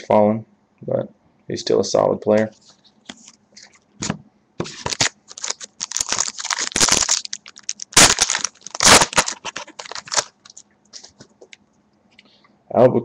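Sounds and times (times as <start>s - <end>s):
plastic wrapper crinkling: 3.0s - 11.2s.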